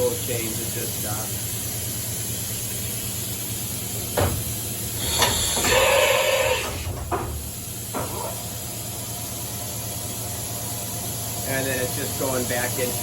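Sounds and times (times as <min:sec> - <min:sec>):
air hiss: 0:04.4 - 0:08.6.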